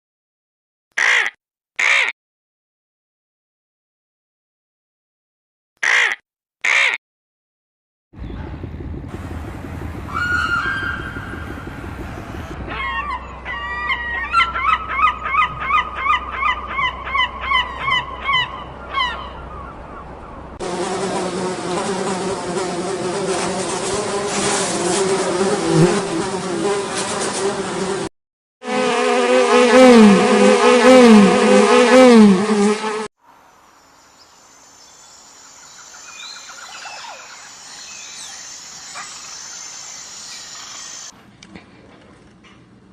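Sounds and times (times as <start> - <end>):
outdoor background noise: 8.2 - 28.1, 28.8 - 42.9
bird calling falling cries: 10.0 - 12.0, 12.7 - 20.4, 35.6 - 41.1
harsh bird calls: 12.7 - 20.3
fly buzzing: 20.6 - 33.1.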